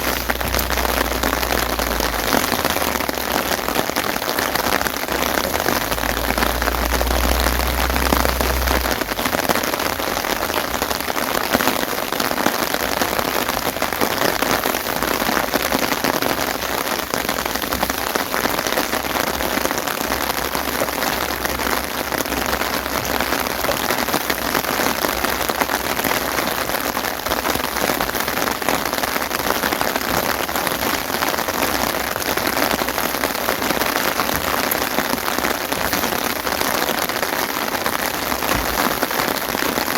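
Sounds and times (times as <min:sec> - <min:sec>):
low rumble: 0:00.0 - 0:11.5
steady rain falling: 0:00.0 - 0:39.9.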